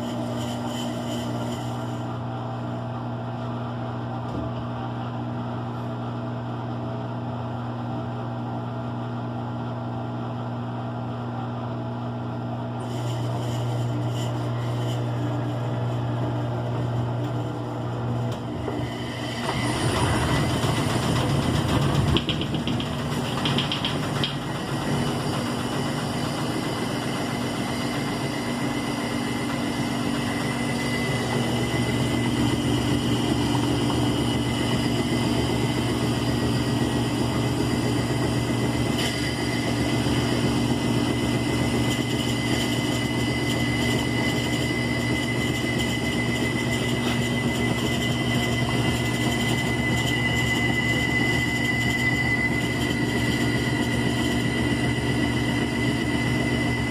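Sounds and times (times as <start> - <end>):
washing machine motor hum: 0.0 - 56.9
high whine: 18.3 - 56.9.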